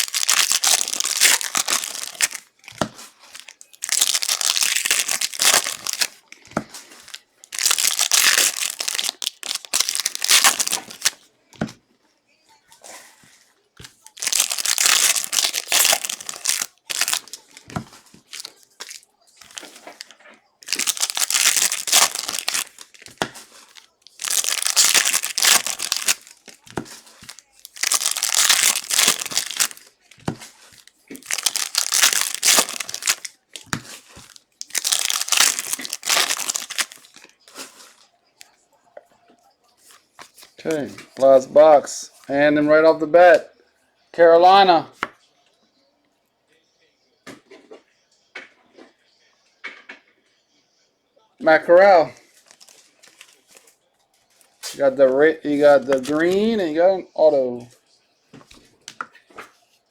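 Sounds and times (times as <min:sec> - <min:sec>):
foil wrappers tearing and crinkling: 0:00.0 - 0:11.2, 0:13.8 - 0:37.9, 0:52.3 - 0:53.7, 0:54.5 - 0:56.6.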